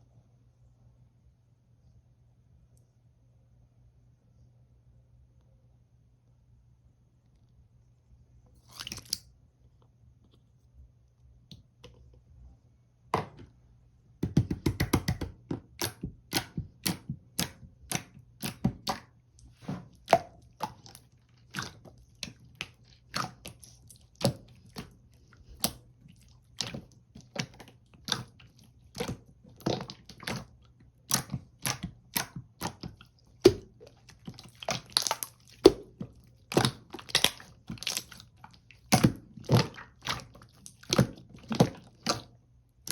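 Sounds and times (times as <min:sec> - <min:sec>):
slime squished by hand: 0:14.3 - 0:42.9.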